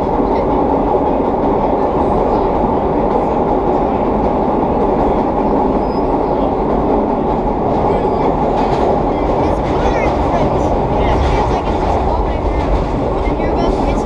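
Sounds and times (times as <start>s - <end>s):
subway train wheels rumbling on rail: 0.0s - 14.0s.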